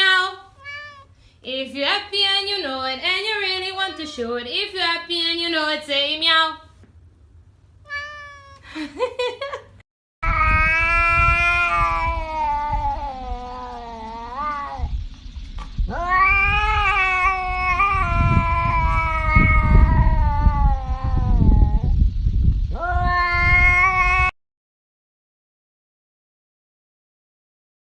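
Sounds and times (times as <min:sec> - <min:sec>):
cat yowling: 0:00.6 - 0:01.1, 0:07.9 - 0:08.7, 0:10.2 - 0:14.9, 0:15.9 - 0:22.0, 0:22.7 - 0:24.4
low rumbling noise: 0:10.2 - 0:24.3.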